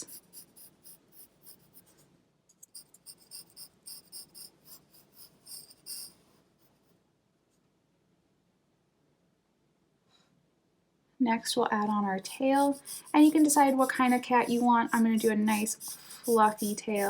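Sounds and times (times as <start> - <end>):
pencil scratching on paper: 0.0 - 2.0, 2.6 - 6.8, 11.8 - 17.0.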